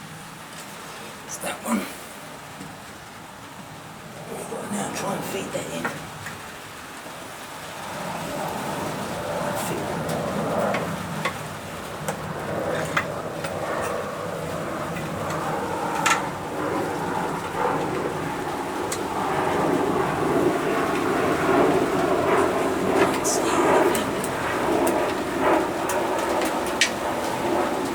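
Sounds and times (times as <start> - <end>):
heavy rain on a roof: 0.0 - 27.9.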